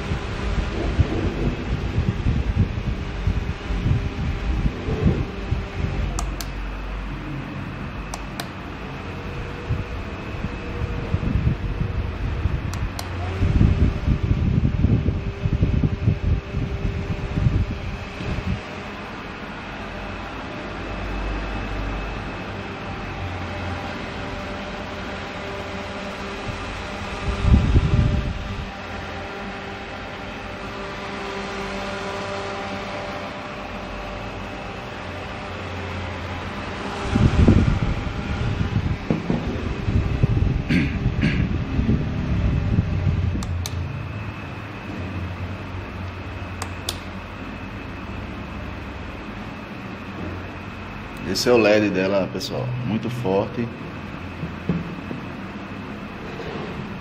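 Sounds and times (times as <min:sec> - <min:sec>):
low rumble: 0:00.0 - 0:19.1
low rumbling: 0:00.0 - 0:30.7, 0:33.5 - 0:57.0
desk fan whirring: 0:00.0 - 0:57.0
sharp clicks: 0:06.2 - 0:06.6, 0:08.1 - 0:08.6, 0:12.7 - 0:13.2, 0:46.6 - 0:47.1.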